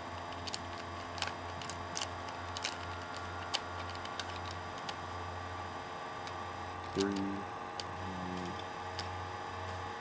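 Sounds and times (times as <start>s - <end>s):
puzzle cube clicking as turned: 0.3s - 5.0s
low hum: 4.4s - 10.0s.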